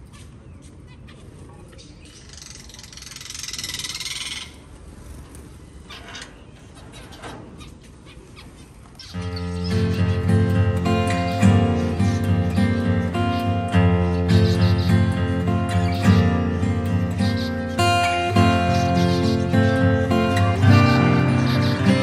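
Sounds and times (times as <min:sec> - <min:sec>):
finches calling: 0:05.7 - 0:22.0
acoustic guitar music: 0:09.1 - 0:22.0.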